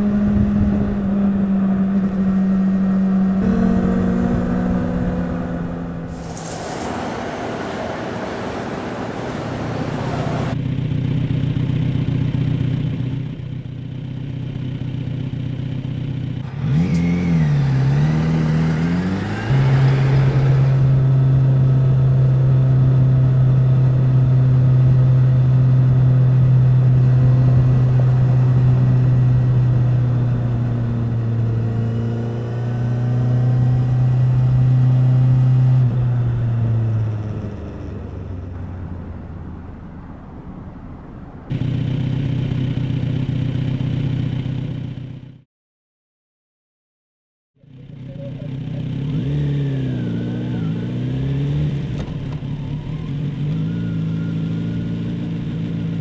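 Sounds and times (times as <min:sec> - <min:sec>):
motorcycle exhaust revving: 0:00.0 - 0:06.3, 0:10.5 - 0:45.4.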